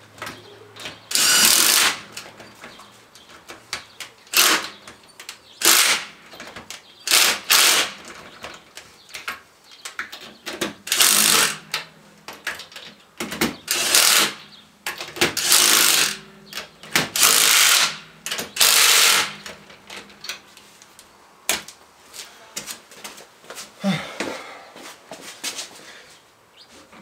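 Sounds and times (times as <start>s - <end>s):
tools clicking and knocking: 0.2s - 20.5s
rattling power wrench: 1.1s - 2.0s, 4.3s - 4.8s, 5.6s - 6.1s, 7.0s - 8.1s, 10.8s - 11.8s, 13.5s - 14.4s, 15.0s - 20.0s.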